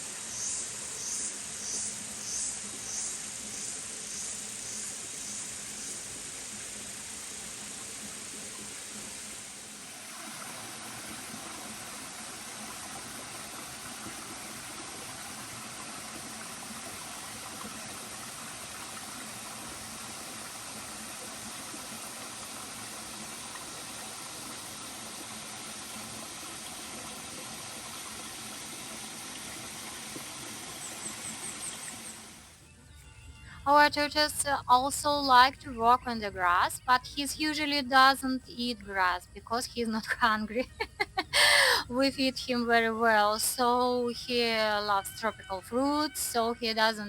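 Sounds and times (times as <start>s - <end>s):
flowing water rushing: 0.0s - 32.6s.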